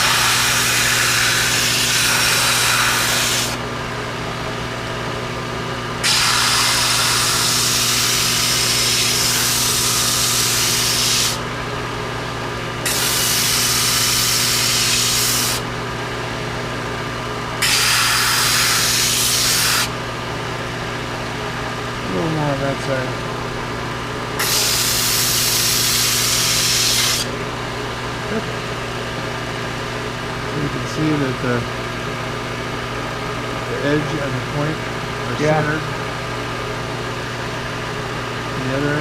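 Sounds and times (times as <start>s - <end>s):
belt sander motor running: 6.0s - 11.6s.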